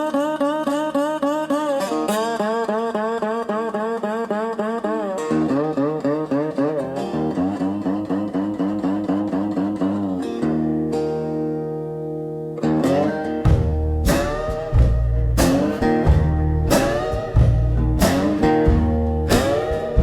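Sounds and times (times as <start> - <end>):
blues guitar bent notes: 0.0 - 20.0
low bass notes and hits: 13.5 - 20.0.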